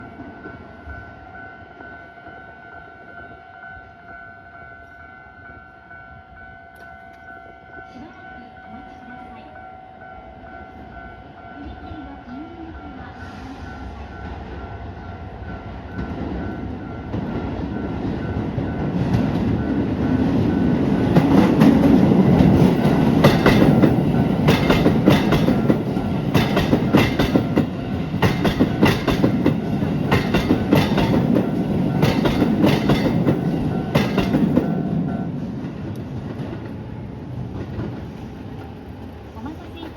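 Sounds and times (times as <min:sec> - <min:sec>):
train rumbling: 0:00.0 - 0:39.9
train wheels clacking on rail joints: 0:15.9 - 0:39.9.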